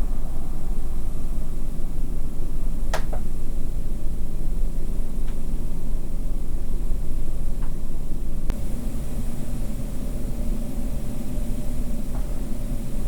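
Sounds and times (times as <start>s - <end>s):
low rumble of night background: 0.0s - 13.0s.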